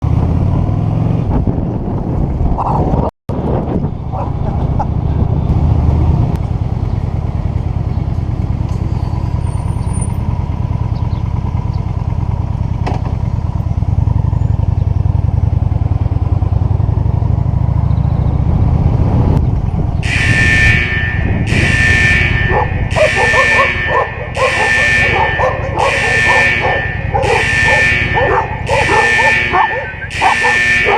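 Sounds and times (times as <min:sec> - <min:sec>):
motorcycle engine running: 0:03.4 - 0:30.9.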